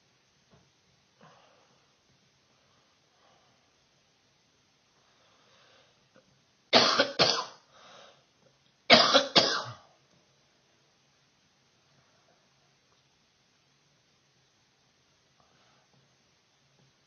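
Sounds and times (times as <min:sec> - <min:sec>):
person coughing: 0:06.8 - 0:07.6, 0:08.9 - 0:09.8
short inhale: 0:07.7 - 0:08.3.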